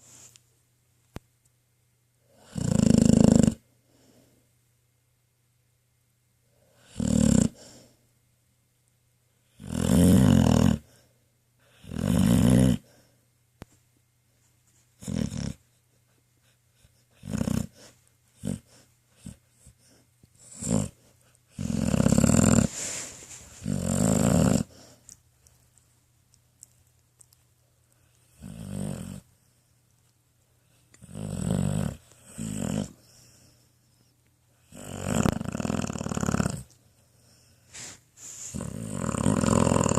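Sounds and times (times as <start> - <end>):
dog snoring: 2.3 - 3.7, 6.7 - 7.9, 9.4 - 13.1, 15.0 - 15.8, 16.4 - 25.1, 28.1 - 29.3, 30.7 - 33.6, 34.6 - 39.9.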